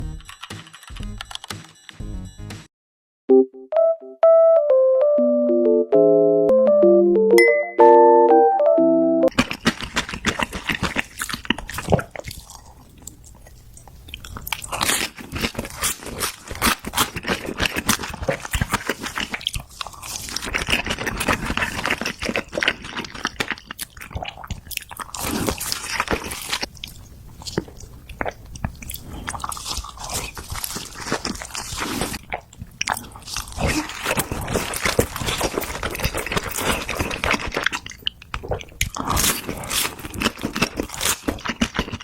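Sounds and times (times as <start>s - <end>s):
biting and chewing: 9.3s - 42.0s
mouth clicks and smacks: 9.3s - 42.0s.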